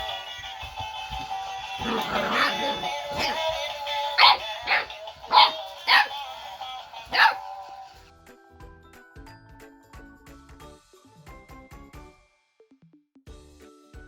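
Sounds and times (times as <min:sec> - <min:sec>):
music: 0:00.0 - 0:14.0
puppy barking: 0:01.8 - 0:06.4, 0:07.0 - 0:07.8.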